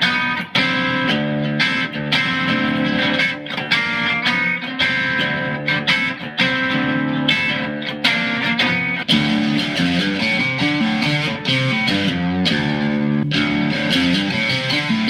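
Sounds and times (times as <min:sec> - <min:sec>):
electric guitar strummed chords: 0:00.0 - 0:15.0.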